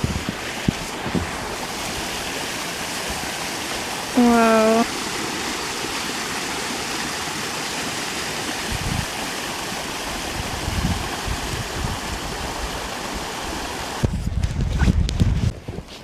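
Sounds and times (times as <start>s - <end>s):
wind gusts on microphone: 0.0s - 3.7s, 8.4s - 16.0s
creek water rushing: 0.0s - 14.1s.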